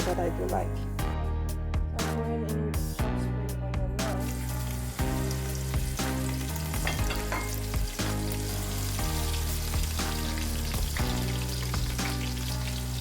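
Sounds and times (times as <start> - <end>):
onion sizzling in hot oil: 4.1 - 13.0.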